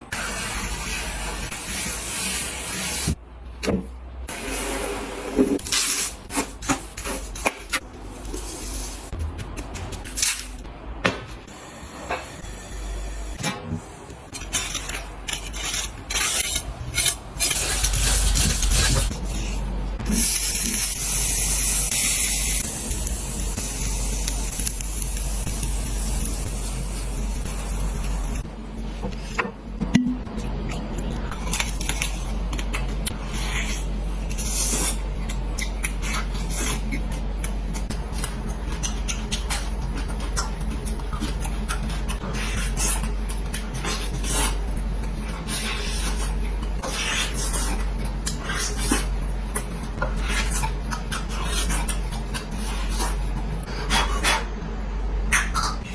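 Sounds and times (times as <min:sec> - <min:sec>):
steady low hum: 0:03.1 - 0:55.9
scraping and rubbing: 0:14.3 - 0:19.7.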